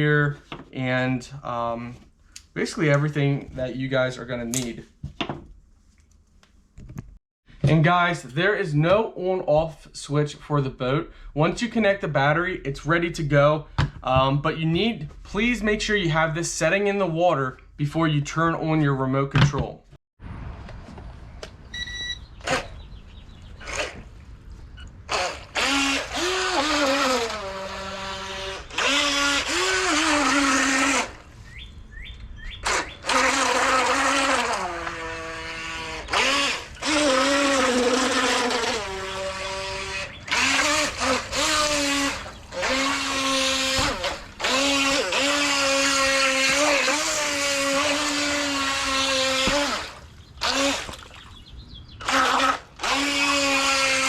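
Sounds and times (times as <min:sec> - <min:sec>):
electric boat motor whining: 0:25.0 - 0:31.3, 0:32.6 - 0:50.9, 0:52.0 - 0:54.0.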